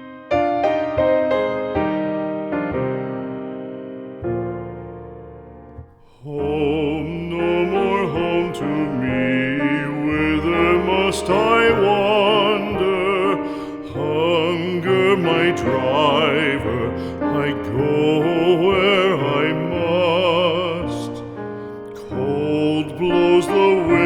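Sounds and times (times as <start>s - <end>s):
piano chord: 0.0s - 24.0s
slow song with vibrato voice: 5.8s - 24.0s.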